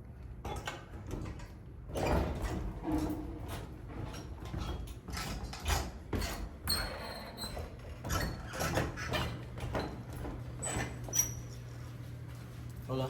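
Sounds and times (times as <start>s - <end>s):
footsteps walking down stairs: 7.4s - 12.9s.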